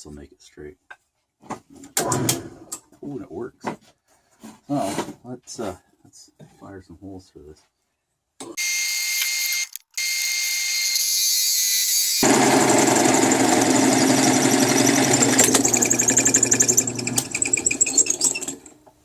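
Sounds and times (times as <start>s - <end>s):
drill press motor whining: 11.7s - 18.8s
hole saw grinding: 12.2s - 18.8s.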